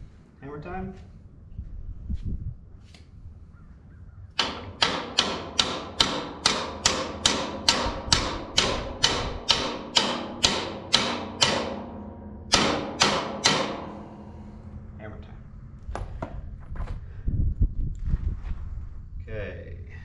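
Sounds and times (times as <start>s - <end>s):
hammer clanging on metal: 4.4s - 14.4s.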